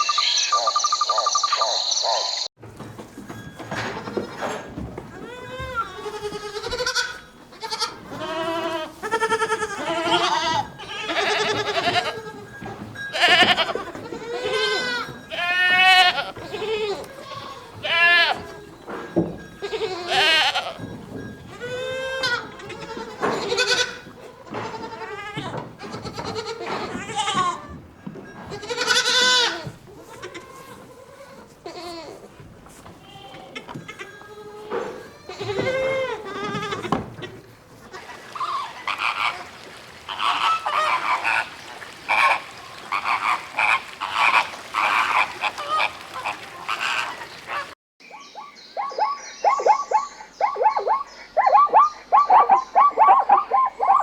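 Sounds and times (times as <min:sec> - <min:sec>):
goats bleating: 0:03.9 - 0:19.0, 0:19.6 - 0:20.9, 0:21.5 - 0:27.8, 0:28.4 - 0:41.5.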